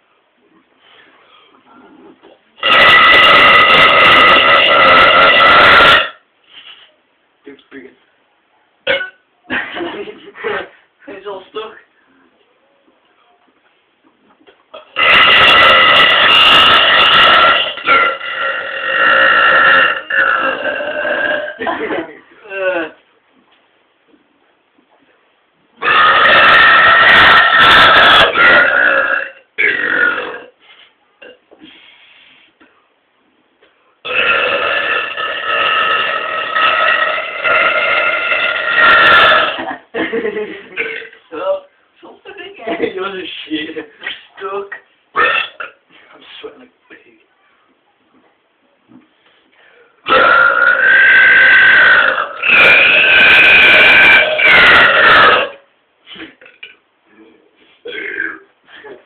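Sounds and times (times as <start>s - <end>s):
person burping: 2.6s - 6.2s, 8.9s - 10.7s, 14.7s - 23.0s, 25.8s - 30.6s, 34.0s - 39.9s, 40.7s - 41.6s, 45.2s - 45.8s, 50.0s - 56.8s, 57.8s - 59.0s.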